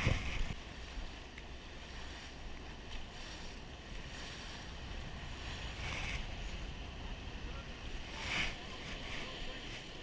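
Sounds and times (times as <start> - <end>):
boat engine rumble: 0.0 - 10.0
water noise: 0.0 - 10.0
wind: 0.0 - 10.0.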